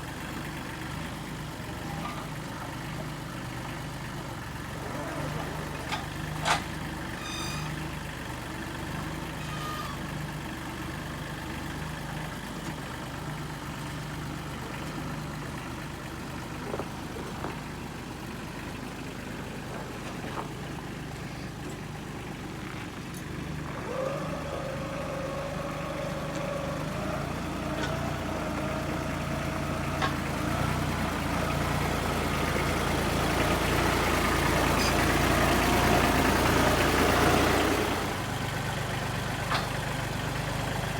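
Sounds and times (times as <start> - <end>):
heavy engine running: 0.0 - 40.9.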